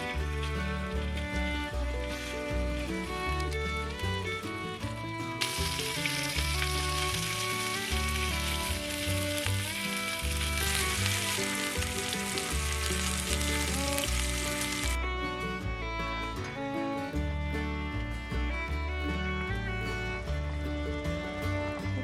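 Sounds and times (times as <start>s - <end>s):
background music: 0.0s - 22.0s
food sizzling in a pan: 5.4s - 15.0s.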